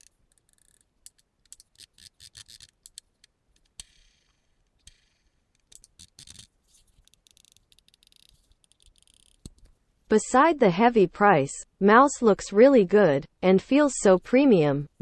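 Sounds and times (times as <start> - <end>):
mouse scraping: 0.0 - 3.1, 5.7 - 9.7
computer mouse clicks: 4.8 - 9.8.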